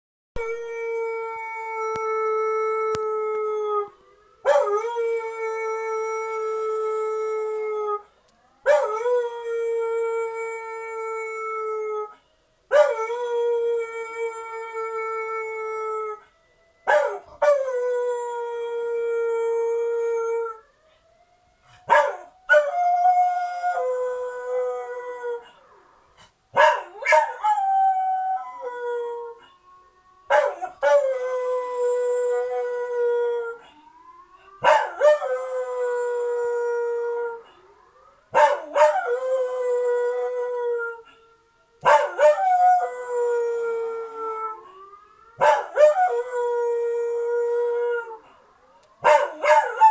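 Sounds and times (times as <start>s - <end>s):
emergency sirens: 0.4s - 49.9s
dog howling: 49.0s - 49.9s.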